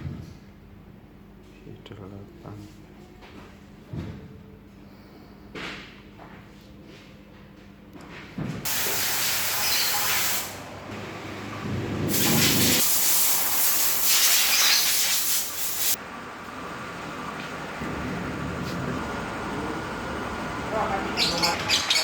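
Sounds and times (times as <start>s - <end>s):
compressed air hissing: 8.7s - 10.7s, 12.1s - 16.0s
low rumble: 11.0s - 12.8s.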